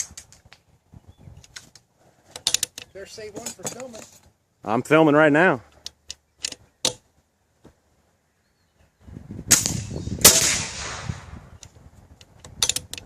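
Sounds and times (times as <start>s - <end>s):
air rifle sharp cracks: 9.5s - 11.3s
air rifle click: 11.6s - 13.0s.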